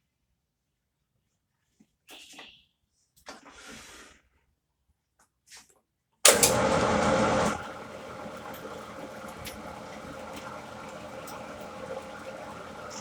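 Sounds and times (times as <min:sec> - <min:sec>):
metalworking machine drilling: 0:06.3 - 0:13.0.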